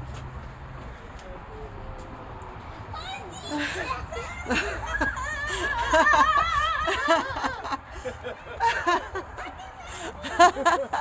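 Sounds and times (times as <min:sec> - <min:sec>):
people giggling and laughing: 0:03.5 - 0:11.0.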